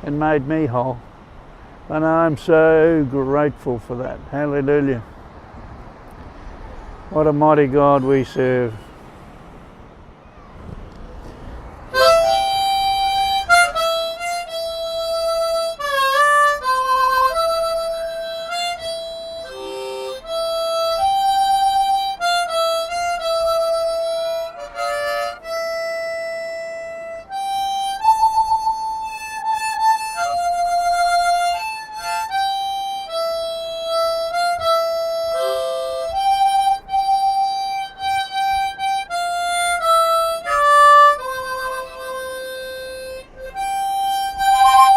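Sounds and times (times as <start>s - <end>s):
harmonica playing slow melody: 11.2s - 44.9s.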